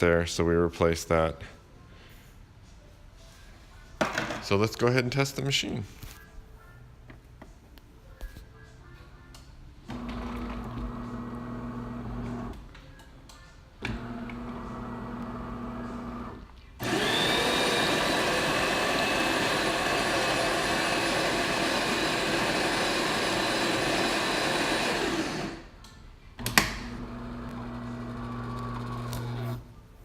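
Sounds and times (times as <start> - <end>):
coffee grinder grinding beans: 14.1 - 25.7, 26.9 - 29.6.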